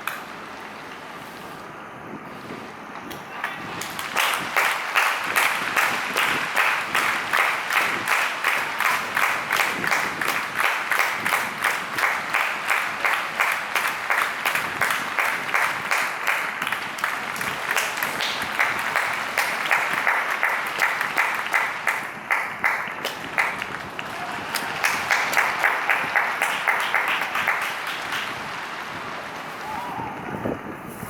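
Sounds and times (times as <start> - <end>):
crowd clapping in rhythm: 0.0 - 0.4, 3.4 - 30.6.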